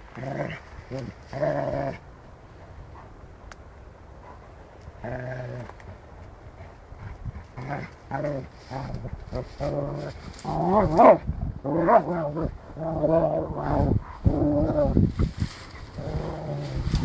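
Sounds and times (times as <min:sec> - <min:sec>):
dog whining and growling: 0:09.6 - 0:15.0.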